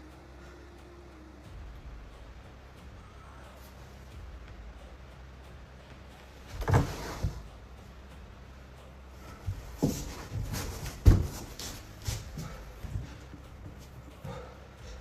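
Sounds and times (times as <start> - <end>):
low steady hum: 0.0 - 15.0
knocks and thumps: 6.5 - 7.5, 9.4 - 14.4.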